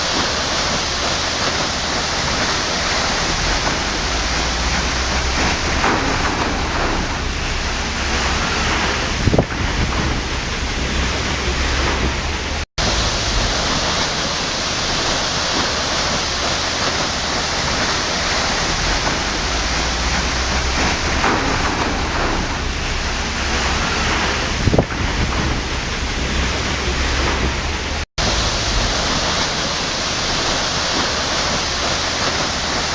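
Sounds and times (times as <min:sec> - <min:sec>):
waterfall rushing: 0:00.0 - 0:32.9.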